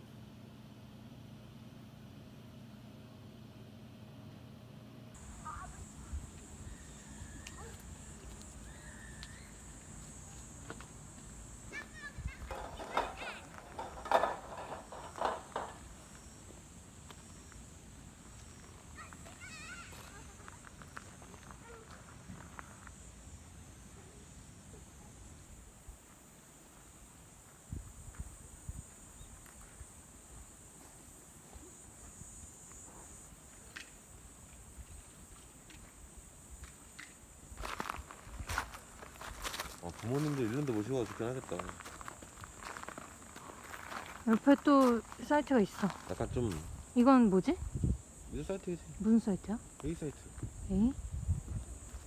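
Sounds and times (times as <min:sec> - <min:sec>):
faint steady background: 0:05.1 - 0:25.7
crickets chirring: 0:05.2 - 0:52.0.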